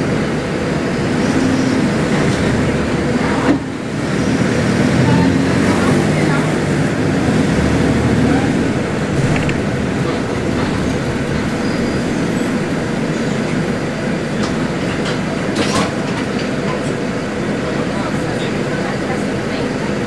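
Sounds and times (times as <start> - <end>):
bus diesel engine drone: 0.0 - 20.0
body rattles and clicks: 8.4 - 12.0.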